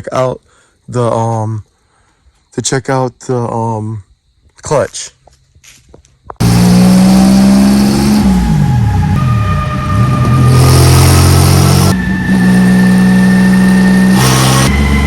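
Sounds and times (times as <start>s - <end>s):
car engine running hard: 6.4s - 15.0s.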